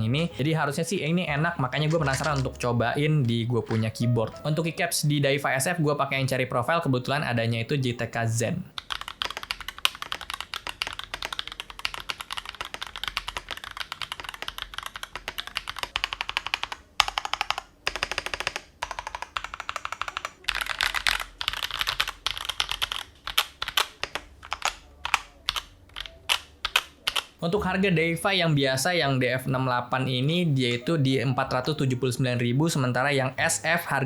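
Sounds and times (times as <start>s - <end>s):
mechanical keyboard typing: 1.3s - 4.8s, 8.7s - 27.4s.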